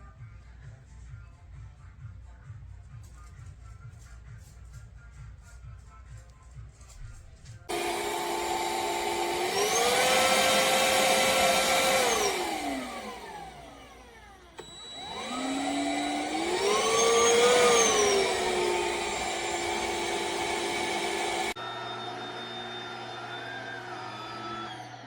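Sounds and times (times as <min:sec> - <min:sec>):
stick vacuum motor whining: 0:07.7 - 0:25.0.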